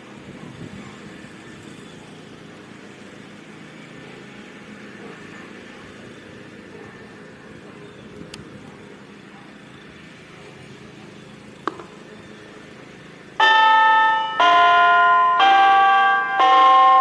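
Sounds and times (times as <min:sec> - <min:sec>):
electronic siren chime tone: 0:13.4 - 0:17.0.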